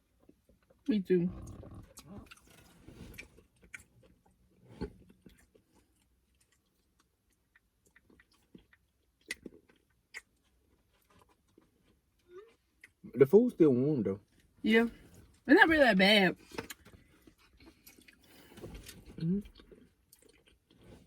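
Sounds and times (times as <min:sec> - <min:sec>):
wet chewing and lip smacks: 0:01.4 - 0:13.1, 0:16.5 - 0:21.0.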